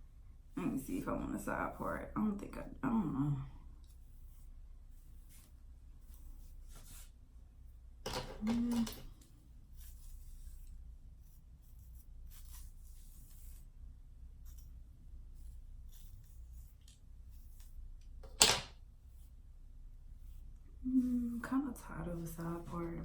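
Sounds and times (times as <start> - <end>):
hair rustling: 20.4 - 23.0.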